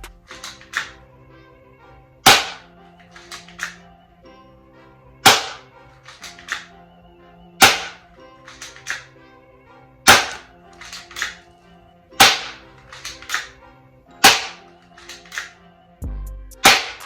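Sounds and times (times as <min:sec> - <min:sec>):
background music: 0:00.0 - 0:17.0
bb pistol shot snaps: 0:00.1 - 0:01.0, 0:02.3 - 0:03.8, 0:05.2 - 0:06.7, 0:07.6 - 0:09.1, 0:10.1 - 0:11.4, 0:12.2 - 0:13.6, 0:14.2 - 0:15.6, 0:16.7 - 0:17.0.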